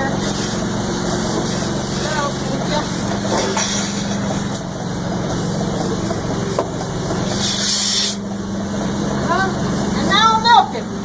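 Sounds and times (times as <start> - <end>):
machinery humming: 0.0 - 11.0
loud hiss: 7.3 - 8.3.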